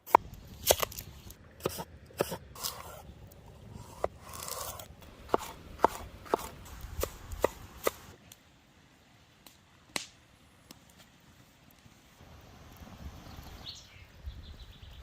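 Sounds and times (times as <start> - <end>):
knife chopping on cutting board: 1.6 - 2.9, 3.9 - 8.0.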